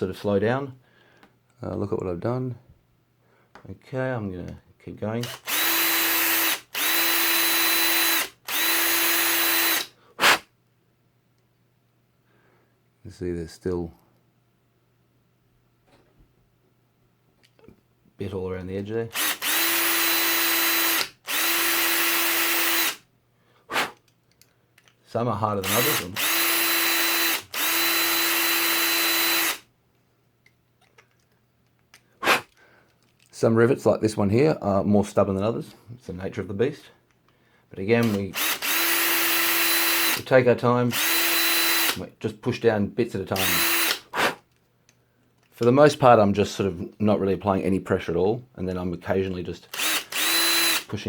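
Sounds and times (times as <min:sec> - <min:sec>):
power drill drilling metal: 0:05.2 - 0:09.9, 0:19.1 - 0:23.0, 0:25.6 - 0:29.6, 0:37.9 - 0:40.3, 0:40.9 - 0:42.0, 0:43.3 - 0:44.1, 0:49.7 - 0:51.0.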